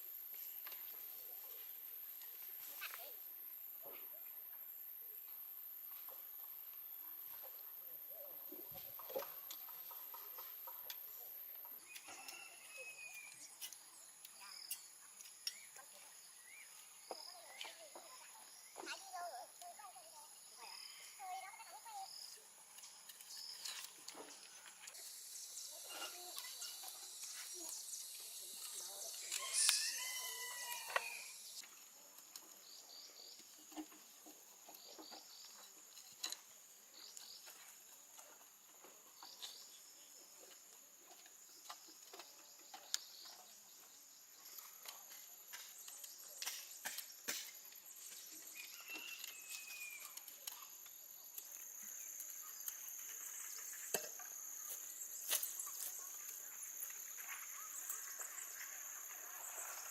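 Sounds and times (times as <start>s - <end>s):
high-pitched insect drone: 24.6s - 31.6s
bird chirp: 39.0s - 59.9s.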